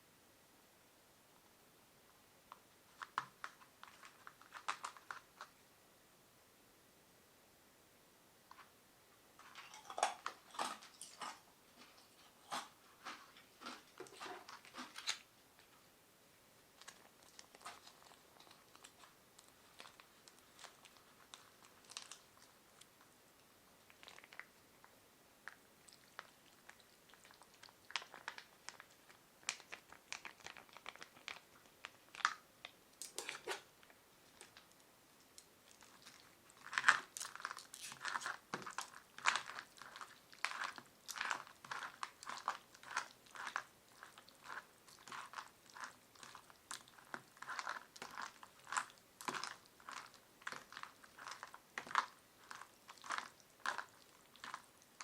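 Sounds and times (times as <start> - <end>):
chewing noodles: 9.5 - 15.7, 23.8 - 32.4, 35.4 - 55.0.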